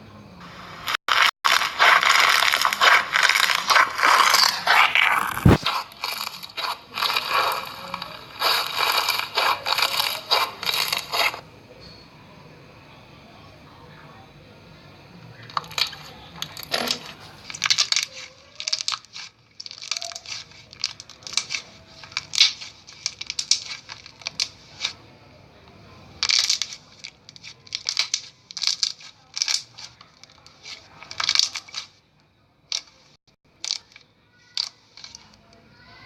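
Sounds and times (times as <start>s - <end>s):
slime squishing and popping: 15.5s - 25.0s.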